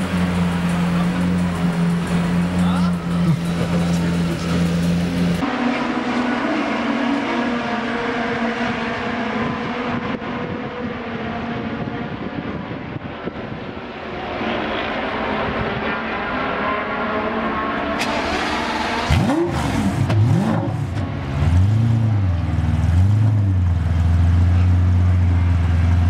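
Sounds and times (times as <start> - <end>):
car engine running: 0.0 - 16.3.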